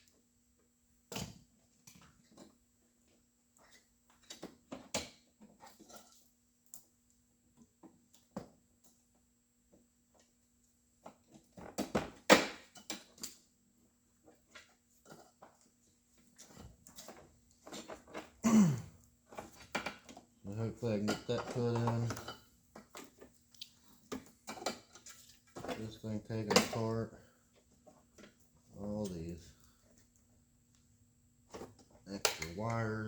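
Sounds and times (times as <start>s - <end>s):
hands clicking and rustling wiring: 1.6s - 33.0s.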